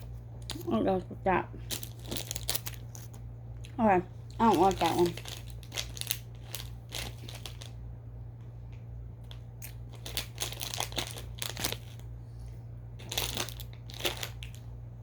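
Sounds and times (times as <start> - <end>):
steady low hum: 0.0 - 15.0
candy wrapper crinkling: 1.6 - 3.3, 4.2 - 7.8, 9.2 - 12.1, 13.0 - 14.7.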